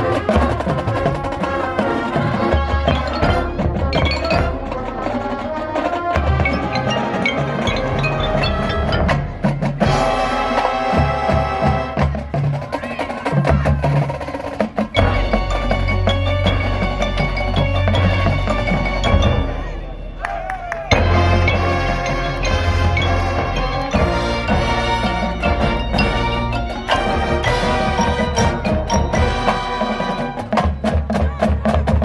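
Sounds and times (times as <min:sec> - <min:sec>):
marching band playing: 0:00.0 - 0:32.0
bell-like mallet percussion: 0:02.6 - 0:05.5, 0:06.2 - 0:11.2, 0:14.8 - 0:32.0.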